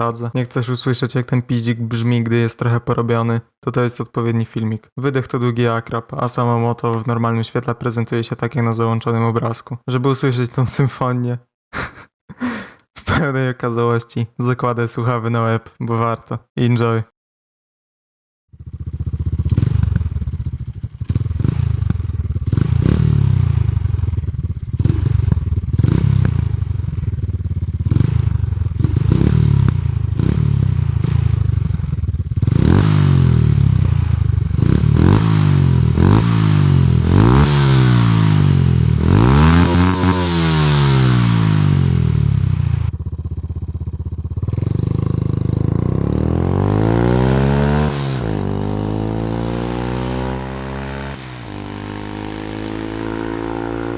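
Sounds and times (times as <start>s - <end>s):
motorcycle engine revving: 18.5s - 53.9s.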